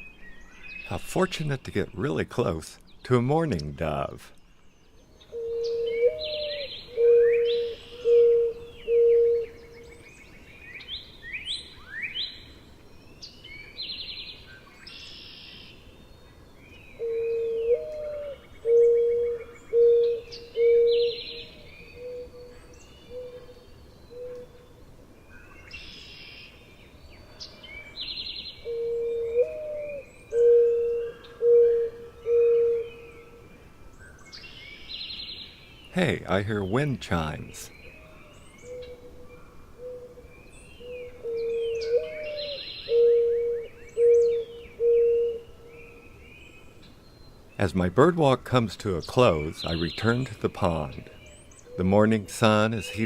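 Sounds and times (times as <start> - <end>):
songbirds chirping and trilling: 0.0 - 53.0
dove cooing: 5.3 - 10.0, 17.0 - 24.6, 28.6 - 33.5, 38.2 - 46.0, 49.3 - 53.0.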